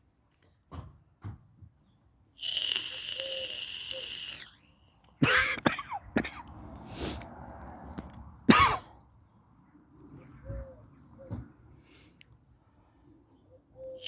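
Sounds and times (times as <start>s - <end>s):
breathy hiss: 2.4s - 7.4s
person coughing: 5.2s - 6.6s, 8.5s - 8.9s.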